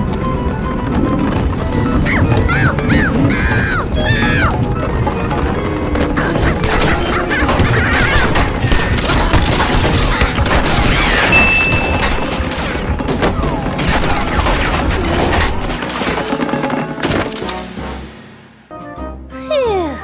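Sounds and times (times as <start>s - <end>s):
background music: 0.0s - 20.0s
brief high tone: 11.3s - 12.3s.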